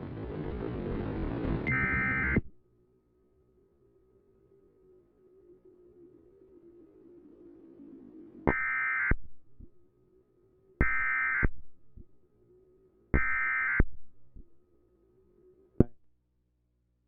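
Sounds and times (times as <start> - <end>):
harsh electronic data buzz: 1.7 - 2.5, 8.5 - 9.2, 10.8 - 11.5, 13.2 - 13.8.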